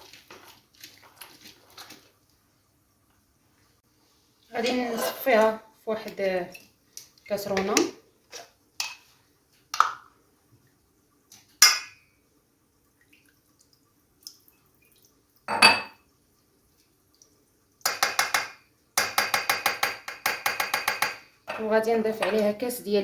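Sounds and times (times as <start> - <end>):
utensils clinking against dishes: 15.5 - 16.0.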